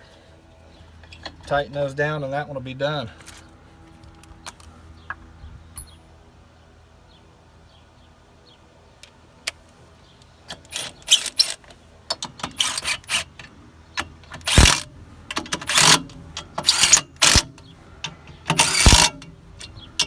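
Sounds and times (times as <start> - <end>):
wrench ratcheting: 12.4 - 13.2, 14.3 - 16.0, 16.6 - 17.5, 18.5 - 19.8
metal clicking: 14.0 - 20.0.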